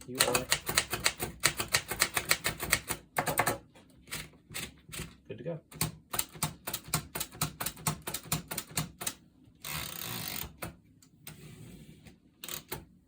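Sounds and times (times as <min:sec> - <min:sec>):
typewriter key strikes: 0:00.1 - 0:03.6.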